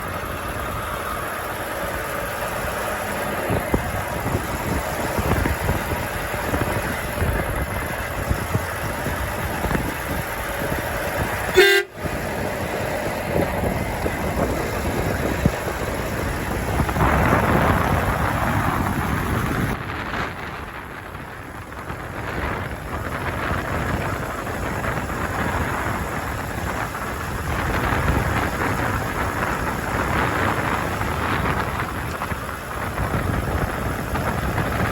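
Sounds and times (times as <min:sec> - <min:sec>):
truck engine and road rumble: 0:00.0 - 0:34.9
truck horn: 0:11.4 - 0:12.4.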